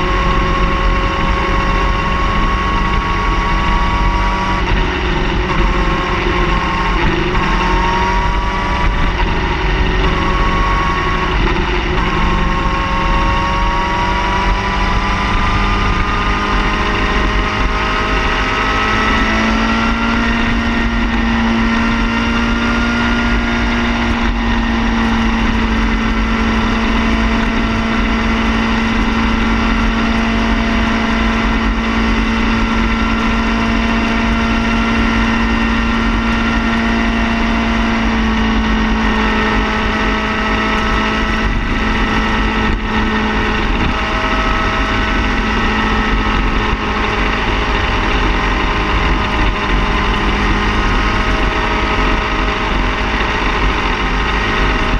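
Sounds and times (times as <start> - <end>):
car engine idling: 0.0 - 18.4.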